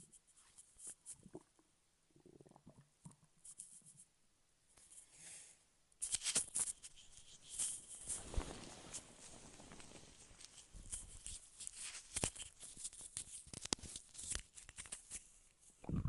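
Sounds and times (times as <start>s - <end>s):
stomach growling: 1.2s - 3.3s, 15.8s - 16.0s
scratchy rustling: 6.0s - 15.2s.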